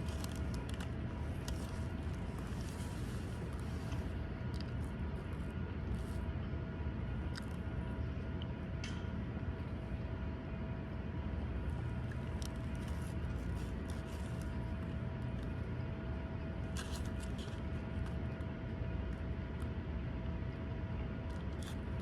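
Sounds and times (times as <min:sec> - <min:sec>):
faint hum: 0:00.0 - 0:22.0
low background rumble: 0:00.0 - 0:22.0.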